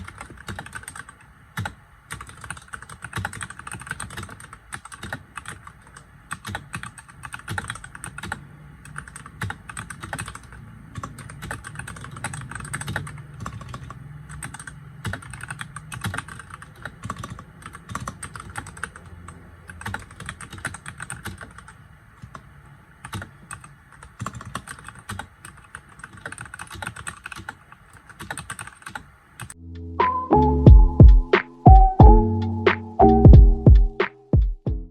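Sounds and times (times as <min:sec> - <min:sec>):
mechanical keyboard typing: 0:00.0 - 0:29.6
loud background music: 0:29.8 - 0:34.9.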